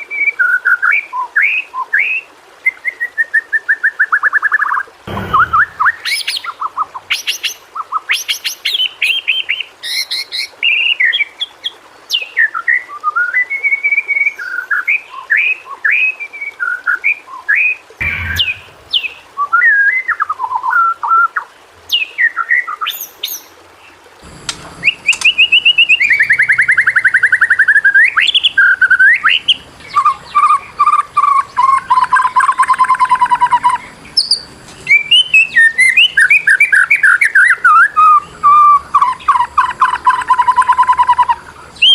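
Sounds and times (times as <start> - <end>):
songbird singing whistles and trills: 0.0 - 23.5, 24.5 - 41.9
fast rattling bird trills: 24.2 - 41.9.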